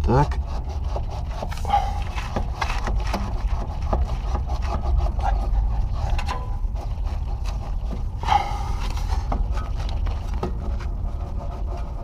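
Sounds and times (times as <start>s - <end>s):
steady low rumble: 0.0s - 12.0s
clicks knocks and scrapes of tools: 1.0s - 5.4s, 6.0s - 6.7s.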